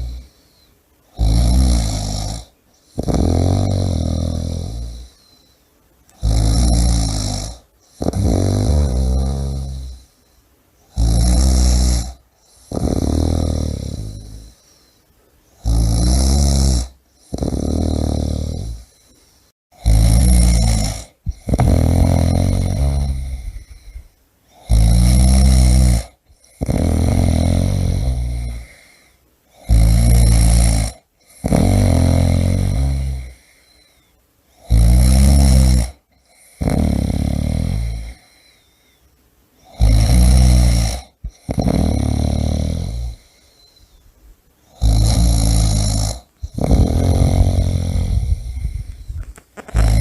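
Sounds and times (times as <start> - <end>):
person snoring loudly: 0.0 - 0.4, 1.1 - 5.2, 6.2 - 10.1, 10.9 - 14.6, 15.6 - 19.1, 19.8 - 33.8, 34.6 - 38.6, 39.6 - 43.7, 44.7 - 50.0.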